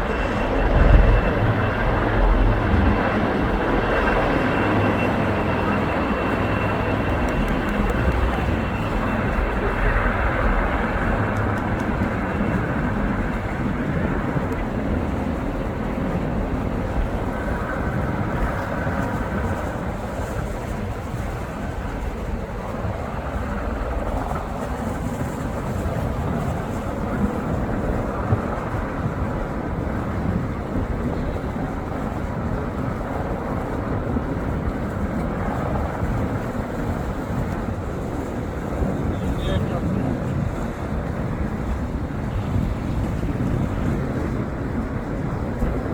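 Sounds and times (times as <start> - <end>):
low rumble: 0.0 - 5.0
helicopter rotor rumble: 0.0 - 45.9
wind on microphone: 0.0 - 45.9.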